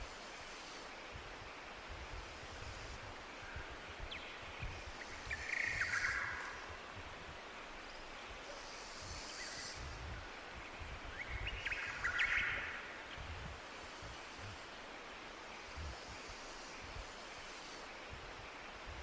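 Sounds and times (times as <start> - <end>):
tropical birds chirping: 3.4 - 7.0, 7.6 - 19.0.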